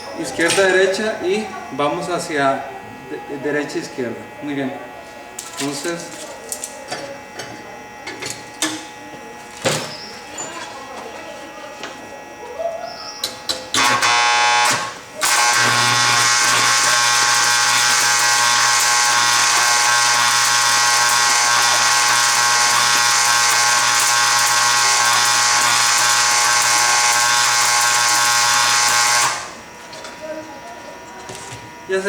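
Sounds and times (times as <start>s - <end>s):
welding arc hissing and buzzing: 0.0s - 12.5s, 13.1s - 32.0s.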